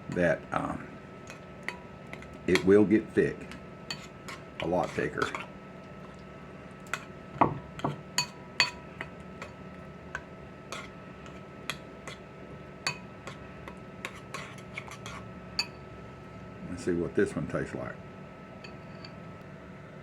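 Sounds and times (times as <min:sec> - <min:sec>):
metal spoon clinking against bowl: 0:01.2 - 0:02.8, 0:03.9 - 0:05.5, 0:07.8 - 0:09.6, 0:12.8 - 0:15.8.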